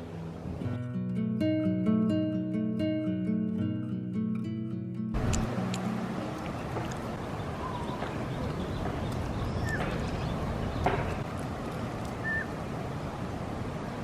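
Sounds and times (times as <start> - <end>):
high bird chirps: 7.4 - 11.2
sharp knocks: 10.8 - 11.2.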